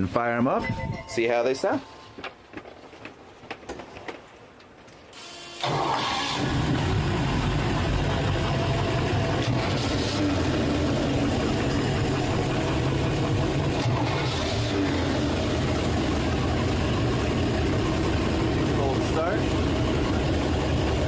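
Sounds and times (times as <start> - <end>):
boat engine cranking and idling: 4.6 - 21.0.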